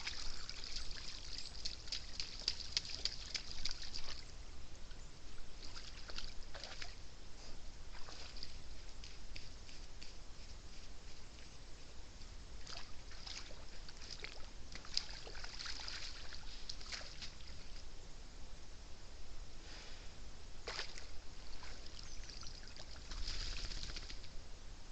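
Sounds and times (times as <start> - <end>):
boar splashing in water: 0.0 - 4.2, 5.6 - 7.0, 7.9 - 8.6, 12.6 - 17.8, 20.6 - 24.2.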